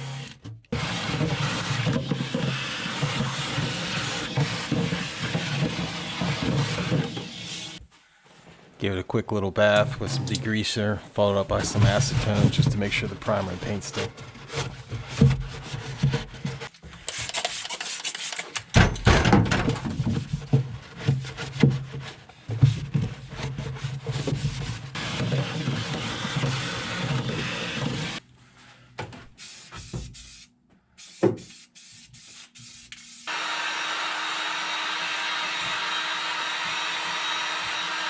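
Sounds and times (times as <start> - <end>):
scrubbing and scraping metal: 0.8 - 18.6
steady blowing hiss: 8.4 - 14.7.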